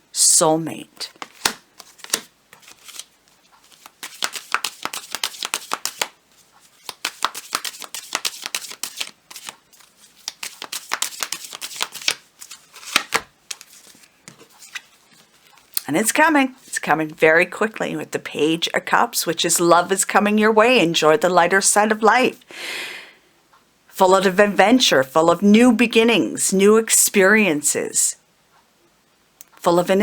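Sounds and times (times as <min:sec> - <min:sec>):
cards being shuffled: 0:01.1 - 0:15.8.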